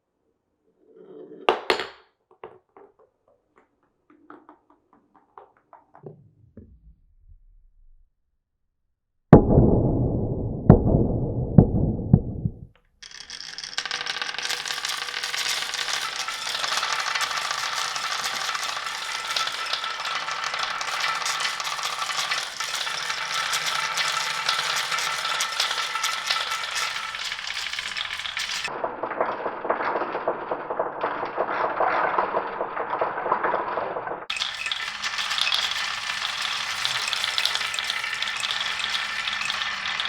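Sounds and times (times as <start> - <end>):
marbles rolling rumble: 11.7 - 40.0
marbles clattering together: 13.0 - 40.0.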